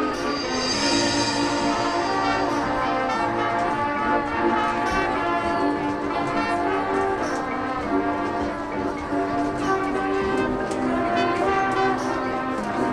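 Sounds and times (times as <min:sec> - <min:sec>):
sharp percussion hits: 0:00.0 - 0:06.6
marching band brass chords: 0:00.0 - 0:12.9.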